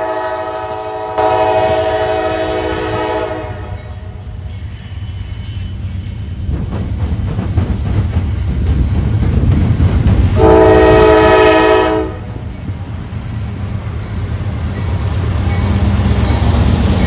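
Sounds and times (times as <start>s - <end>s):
locomotive horn blast: 0.0s - 3.9s, 10.4s - 12.3s
freight train rumbling: 0.0s - 17.0s.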